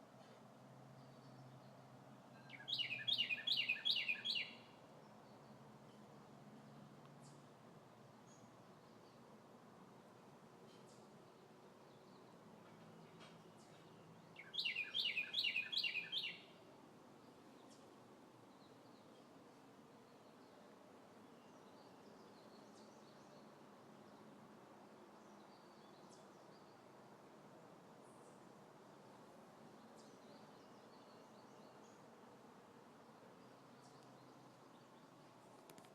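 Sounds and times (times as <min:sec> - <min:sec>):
steady low hiss: 0:00.0 - 0:35.9
faint high bird chirps: 0:01.0 - 0:06.1, 0:13.0 - 0:16.6.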